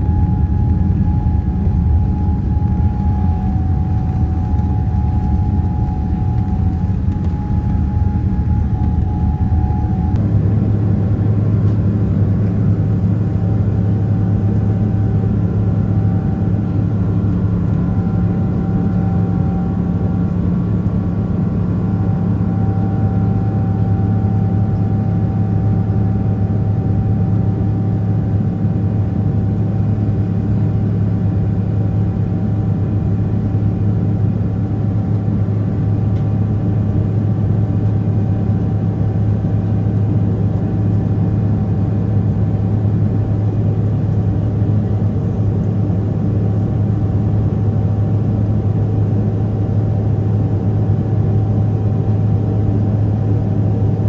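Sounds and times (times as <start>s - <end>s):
airflow noise: 0.0s - 11.7s
faint whining tones: 0.0s - 54.0s
jet engines droning: 0.0s - 54.0s.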